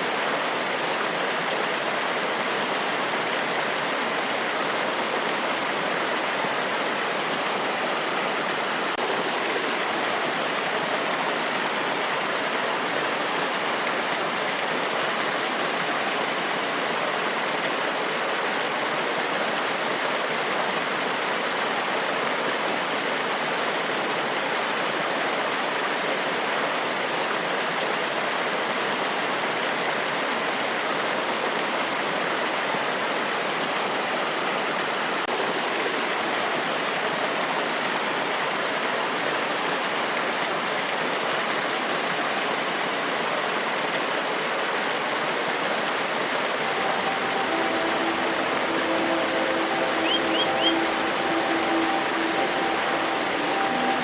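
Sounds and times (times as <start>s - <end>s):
water rushing over rocks: 43.6s - 54.0s.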